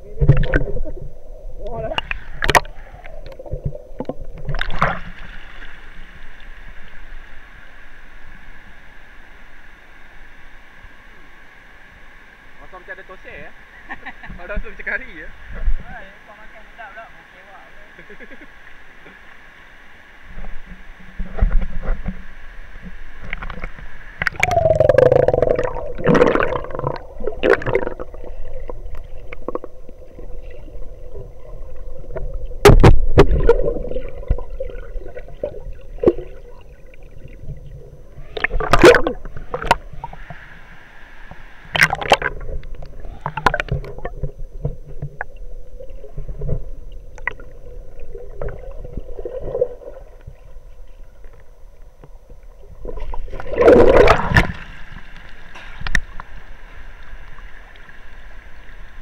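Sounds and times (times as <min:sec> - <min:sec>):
muffled water gurgling and sloshing: 0:00.0 - 0:15.9, 0:18.0 - 0:59.0
steady hum: 0:16.5 - 0:59.0.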